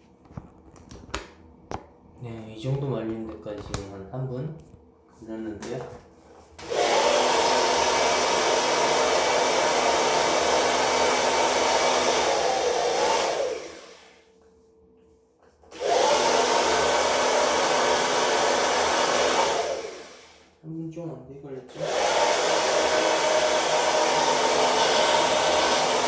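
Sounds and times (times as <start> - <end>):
fan winding down: 6.6 - 14.2, 15.7 - 20.4, 21.7 - 26.0
hair dryer blowing: 6.6 - 14.3, 15.7 - 20.6, 21.7 - 26.0.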